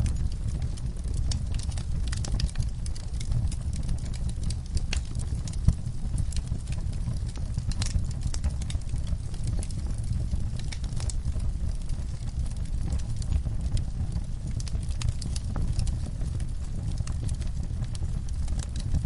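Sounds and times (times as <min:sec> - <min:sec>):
fire crackling and popping: 0:00.0 - 0:19.0
low rumble of flames: 0:00.0 - 0:19.0.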